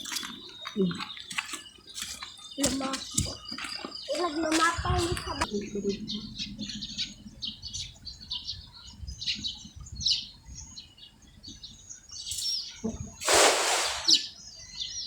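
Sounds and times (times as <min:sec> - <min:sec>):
small birds chirping: 0:00.0 - 0:15.0
loud rushing noise: 0:13.2 - 0:14.2.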